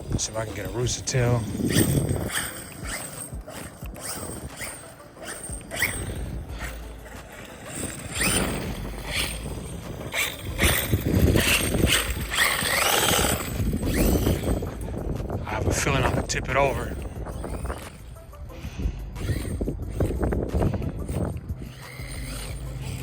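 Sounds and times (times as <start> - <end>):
tyres spinning on loose dirt: 0.0 - 18.2, 19.1 - 23.0
electric motor whining: 0.0 - 23.0.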